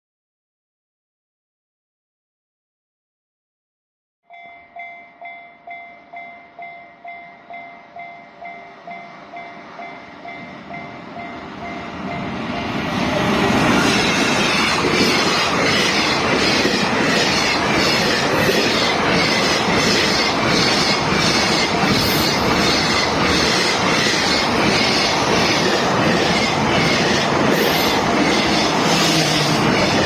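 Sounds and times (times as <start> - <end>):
level crossing warning bell: 4.3 - 12.7
freight train passing: 4.3 - 30.0
train wheels clacking on rail joints: 8.9 - 30.0.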